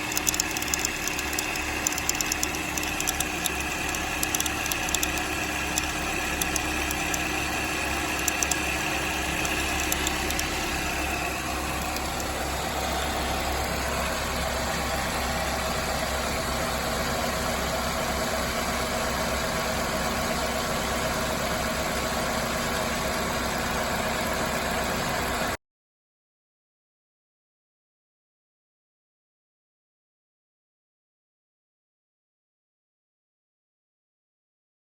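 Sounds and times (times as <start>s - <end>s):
sharp engine clicks: 0.0s - 12.7s
car engine idling: 0.0s - 25.4s
high engine whine: 0.0s - 25.6s.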